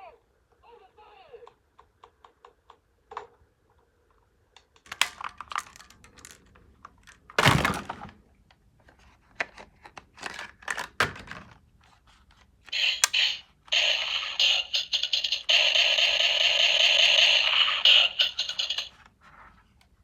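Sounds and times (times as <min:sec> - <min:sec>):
plastic toy guns clicking: 0:04.6 - 0:07.2, 0:12.8 - 0:13.4
harsh noisy sound: 0:12.7 - 0:18.9.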